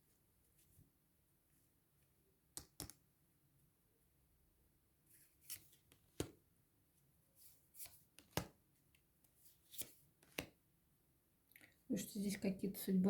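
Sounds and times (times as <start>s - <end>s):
cards rustling and tapping on table: 5.4s - 6.4s, 7.8s - 9.0s, 9.6s - 10.6s.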